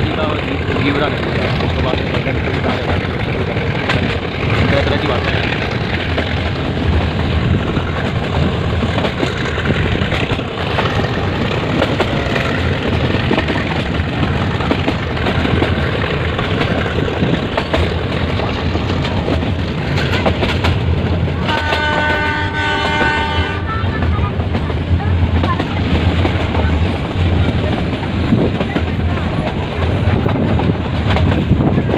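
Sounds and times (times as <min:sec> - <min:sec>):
train running rumble: 0:00.0 - 0:31.9
train horn: 0:21.4 - 0:24.0.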